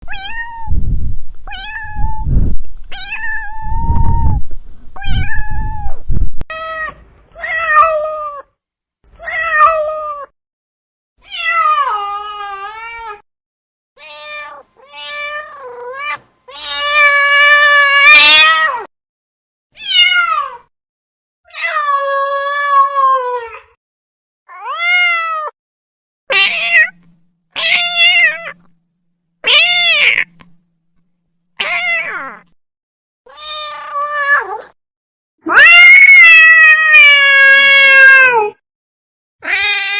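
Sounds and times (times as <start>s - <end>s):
cat meowing: 0.1s - 0.8s, 1.5s - 2.3s, 2.9s - 4.4s, 5.0s - 8.5s, 9.2s - 10.3s, 11.2s - 13.2s, 14.0s - 18.9s, 19.8s - 20.7s, 24.5s - 25.6s, 26.3s - 28.7s, 29.4s - 30.4s, 31.6s - 32.5s, 33.3s - 34.8s, 35.4s - 38.6s, 39.4s - 39.9s
low rumbling noise: 0.6s - 6.4s.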